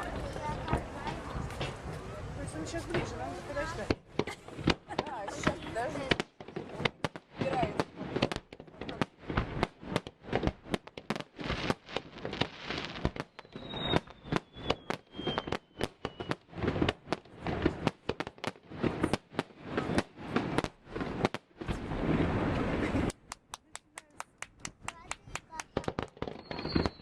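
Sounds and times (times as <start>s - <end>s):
fireworks bangs and pops: 0.0s - 27.0s
falling firework whistle: 13.3s - 16.4s, 26.2s - 27.0s.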